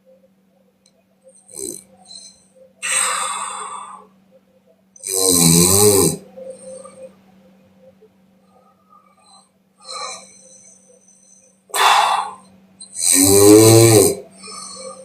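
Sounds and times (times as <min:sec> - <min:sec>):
woman snoring: 0:01.5 - 0:04.1, 0:05.0 - 0:06.2, 0:09.1 - 0:10.4, 0:11.7 - 0:15.0
rushing breath: 0:02.8 - 0:04.1, 0:11.7 - 0:12.5.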